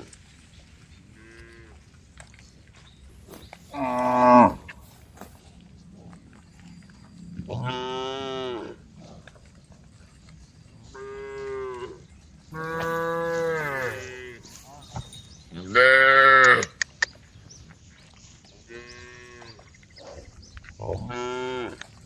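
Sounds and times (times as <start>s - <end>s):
cows mooing: 3.7s - 5.0s, 7.4s - 8.8s, 10.9s - 16.8s, 20.9s - 21.8s.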